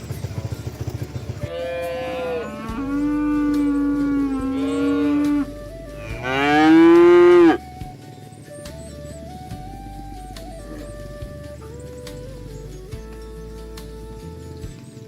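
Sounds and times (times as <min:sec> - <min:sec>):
cattle mooing: 0:01.5 - 0:07.6.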